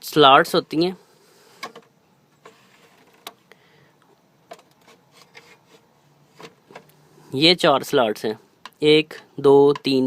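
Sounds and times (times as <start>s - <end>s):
faint clicks and rubbing of parts: 1.4s - 7.4s.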